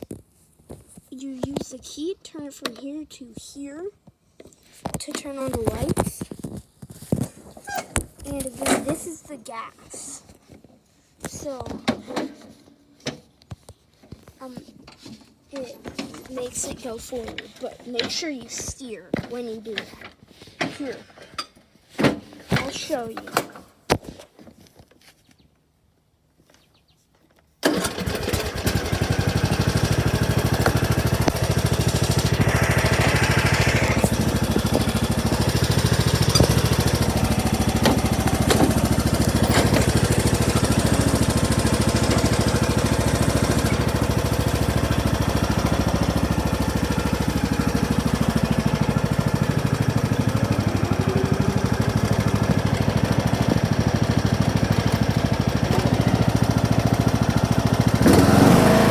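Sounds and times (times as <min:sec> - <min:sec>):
lawn mower engine running: 0:27.6 - 0:58.9.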